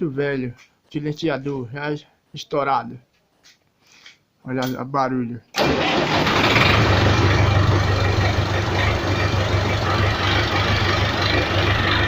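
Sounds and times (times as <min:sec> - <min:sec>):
tractor diesel engine running: 0:05.6 - 0:12.0.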